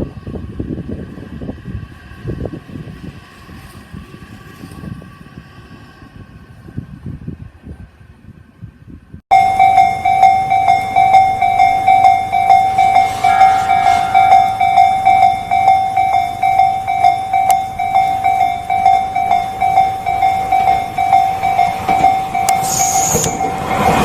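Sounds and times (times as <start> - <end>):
level crossing alarm ringing: 9.3 - 24.0.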